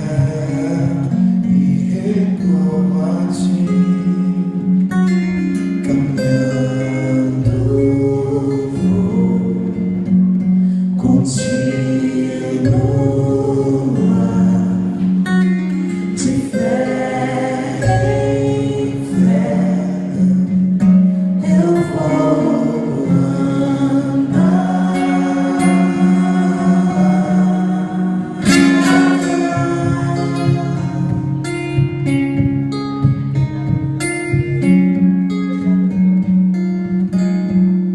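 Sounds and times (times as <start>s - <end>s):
acoustic guitar chords: 0.0s - 37.9s
person singing: 21.4s - 32.1s.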